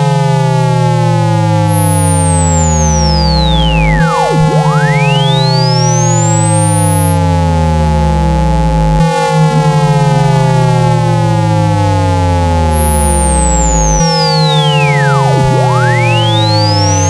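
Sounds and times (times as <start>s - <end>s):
falling pitch sweeps: 0.0s - 9.0s, 10.9s - 17.0s
steady synthetic tones: 0.0s - 9.0s, 9.6s - 17.0s
low pulsing buzz: 9.6s - 17.0s.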